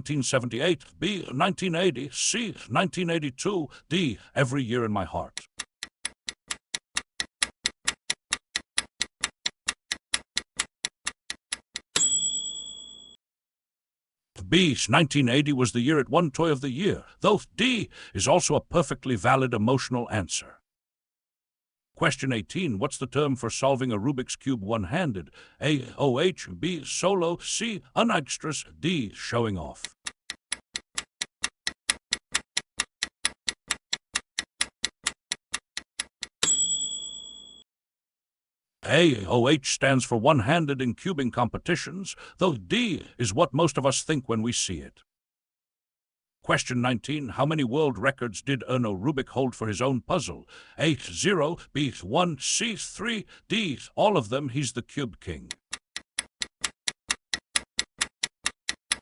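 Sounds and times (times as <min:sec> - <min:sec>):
clock-like timer ticking: 0:05.2 - 0:12.1, 0:29.6 - 0:36.6, 0:55.4 - 0:59.0
ringing ding: 0:12.0 - 0:13.2, 0:36.4 - 0:37.6.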